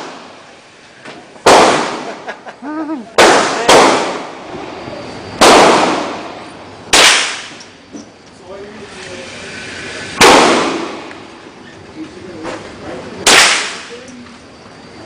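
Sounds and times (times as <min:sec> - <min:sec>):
echoing gunshots: 0:00.0 - 0:00.5, 0:01.4 - 0:02.4, 0:03.2 - 0:04.5, 0:05.4 - 0:07.6, 0:10.2 - 0:11.3, 0:13.2 - 0:13.9.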